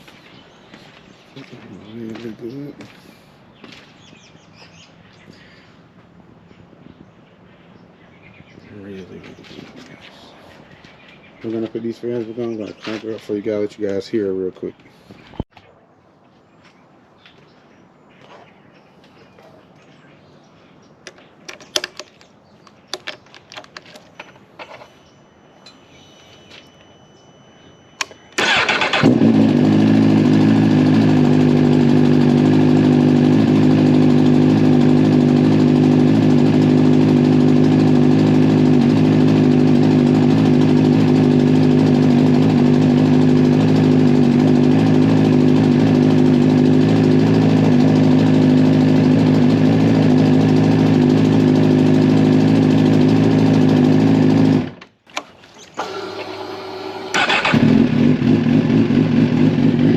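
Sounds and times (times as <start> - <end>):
motorcycle engine idling: 27.2 - 54.8, 55.7 - 59.9.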